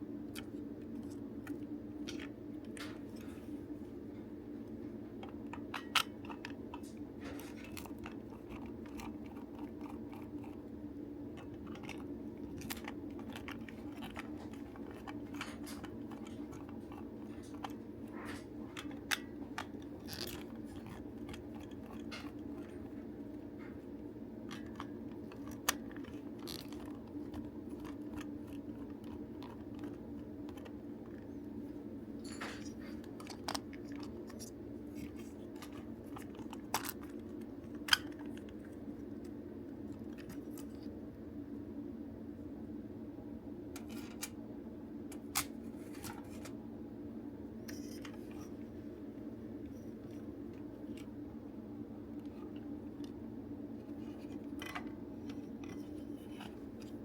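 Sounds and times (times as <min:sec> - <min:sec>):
steady low hum: 0:00.0 - 0:57.0
plastic clicks and scrapes: 0:05.2 - 0:10.7, 0:11.3 - 0:23.8, 0:24.5 - 0:31.3, 0:32.3 - 0:38.8, 0:53.8 - 0:57.0.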